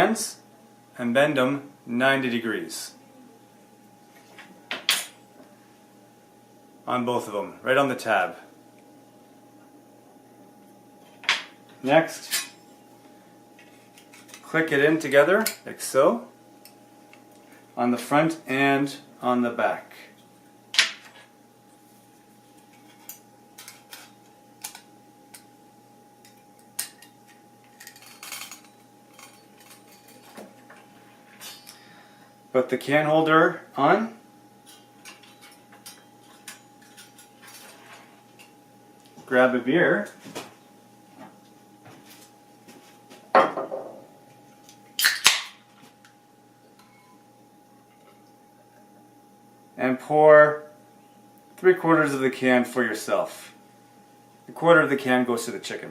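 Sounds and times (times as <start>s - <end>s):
faint steady hum: 0.0s - 55.9s
metal parts clicking and clinking: 26.3s - 30.4s.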